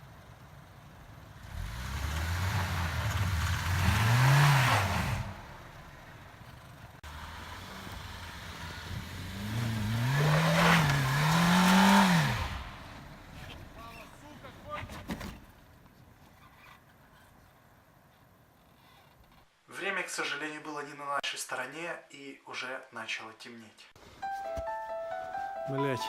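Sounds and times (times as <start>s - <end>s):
wheels spinning in snow: 0.0s - 13.8s
car engine revving: 1.3s - 13.7s.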